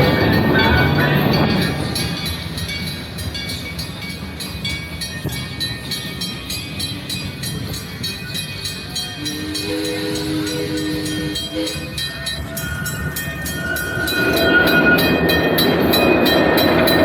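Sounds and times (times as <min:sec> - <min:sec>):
rhythmic train clatter: 0:00.0 - 0:17.0
train low rumble: 0:00.0 - 0:17.0.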